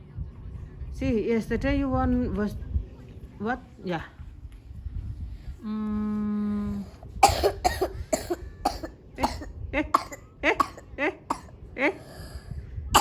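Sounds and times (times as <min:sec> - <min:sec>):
steady one-pitch hum: 0:00.4 - 0:13.0
child coughing: 0:07.2 - 0:12.3.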